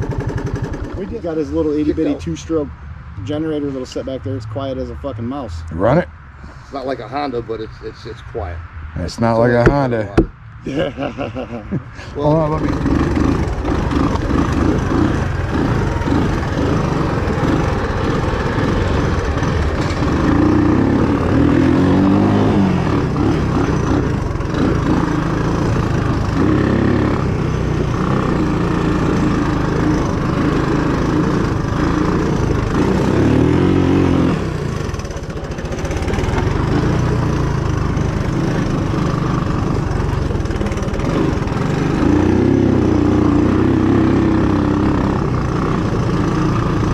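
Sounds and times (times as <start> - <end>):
small engine revving: 0.0 - 2.6, 12.2 - 46.9.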